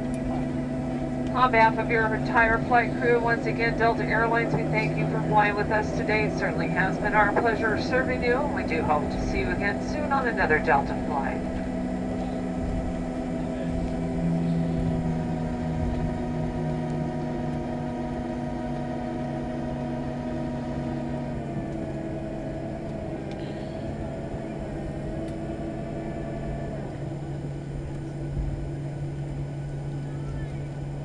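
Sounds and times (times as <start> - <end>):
airplane engine hum: 0.0 - 31.0
low rumble: 0.0 - 31.0.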